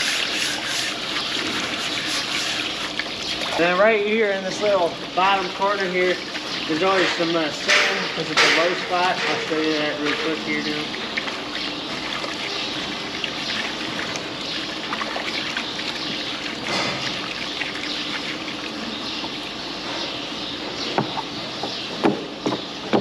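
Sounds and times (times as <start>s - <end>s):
water trickling in trough: 0.0s - 19.6s
sharp knocks: 7.0s - 10.4s.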